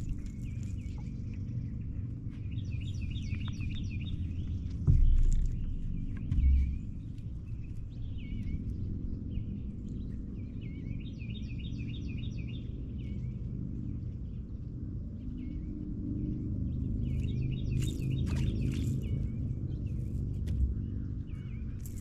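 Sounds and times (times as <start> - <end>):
songbirds calling: 0.0 - 22.0
steady low rumble: 0.0 - 22.0
low thump: 4.8 - 7.2.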